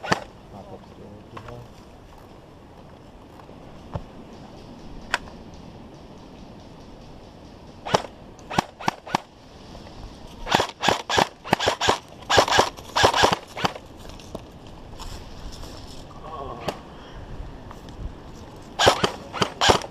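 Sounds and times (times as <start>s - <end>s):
airsoft rifle shots: 0.0s - 0.3s, 7.1s - 9.3s, 10.4s - 13.9s, 18.8s - 19.9s.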